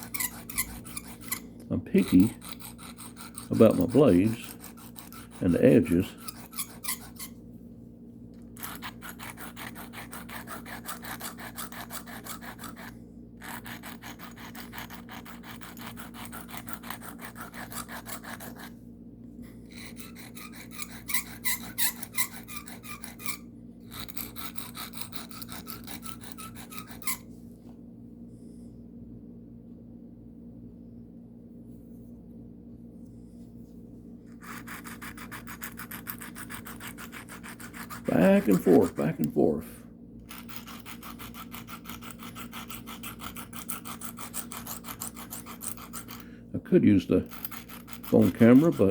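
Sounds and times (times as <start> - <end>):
knife scraping on sharpening stone: 0.0 - 7.4, 8.6 - 18.7, 19.7 - 27.3, 34.4 - 39.3, 40.3 - 46.2, 47.2 - 48.9.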